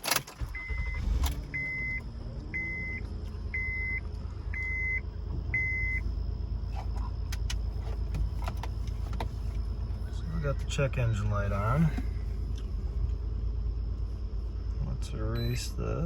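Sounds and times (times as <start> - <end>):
car engine misfiring: 0.0 - 14.6
dashboard warning chime beeps: 0.4 - 6.2, 15.3 - 15.8.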